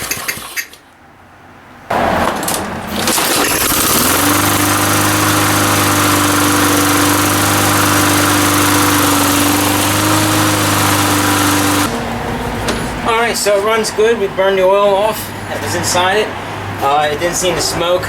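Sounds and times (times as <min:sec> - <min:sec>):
lawn mower engine at full throttle: 0:01.9 - 0:12.2.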